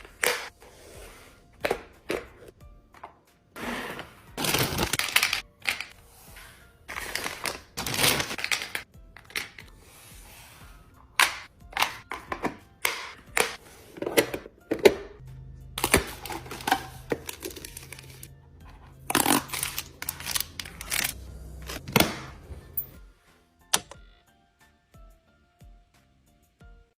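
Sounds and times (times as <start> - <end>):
containers clicking and clattering: 11.2 - 15.2, 15.8 - 18.2.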